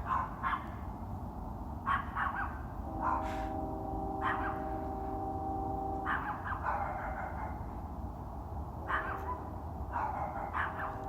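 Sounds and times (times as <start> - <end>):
dog barking: 0.0 - 0.8, 1.9 - 5.0, 6.0 - 7.8, 8.8 - 11.0
low jet rumble in sky: 1.8 - 11.0
multi-pitch steady hum: 2.6 - 9.8.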